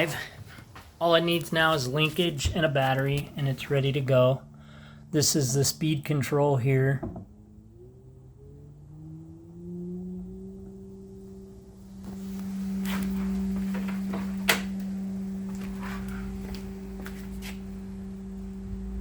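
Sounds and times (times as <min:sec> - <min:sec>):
electric motor humming: 0:10.4 - 0:19.0.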